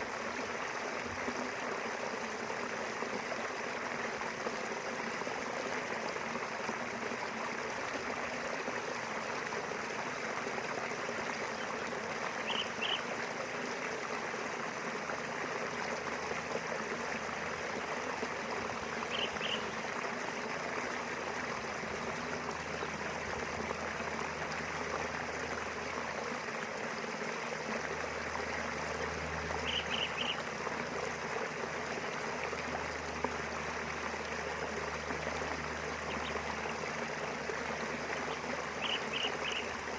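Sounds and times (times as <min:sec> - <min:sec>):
bird chirping: 0:12.4 - 0:13.0, 0:19.1 - 0:19.7, 0:29.6 - 0:30.4, 0:38.8 - 0:39.7.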